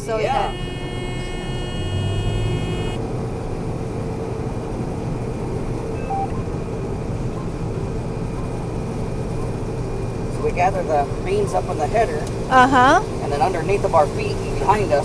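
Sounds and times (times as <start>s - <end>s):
high whine: 0.0s - 3.1s
combine harvester engine rumble: 0.0s - 15.0s.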